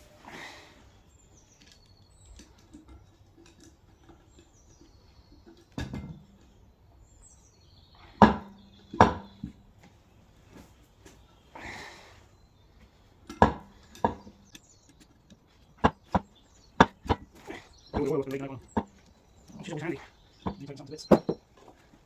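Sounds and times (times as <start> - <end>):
metal tools clanking: 16.8 - 21.9.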